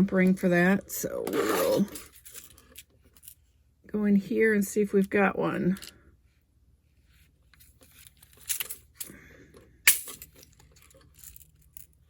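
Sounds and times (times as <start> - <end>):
metal jewelry parts rattling: 1.6 - 3.4, 7.6 - 9.2, 9.9 - 12.0.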